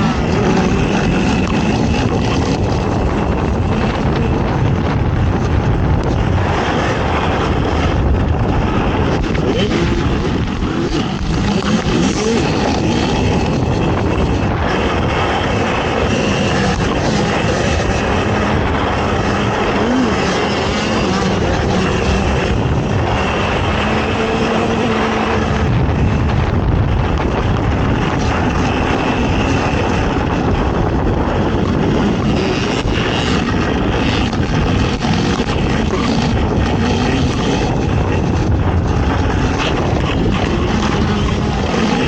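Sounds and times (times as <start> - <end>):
atv engine revving: 0.0 - 42.0.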